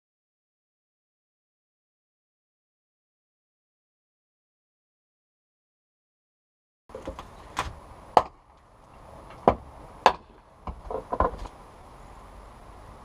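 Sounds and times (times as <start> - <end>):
sharp wooden knocks: 6.9 - 8.4, 9.3 - 11.5
faint steady hiss: 6.9 - 13.0.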